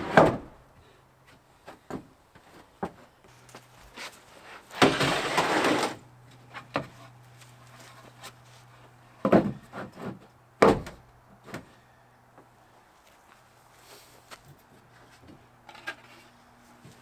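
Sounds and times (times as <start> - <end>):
scraping slide: 4.7 - 6.0.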